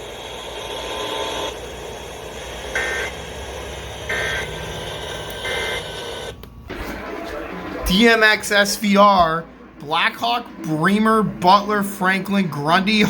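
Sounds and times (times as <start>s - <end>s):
radio hiss: 0.0s - 13.0s
two-tone data signal bursts: 5.4s - 6.3s.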